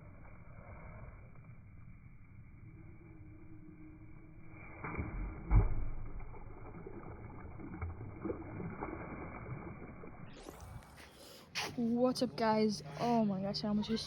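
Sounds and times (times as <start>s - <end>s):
low rumble: 0.0s - 11.2s.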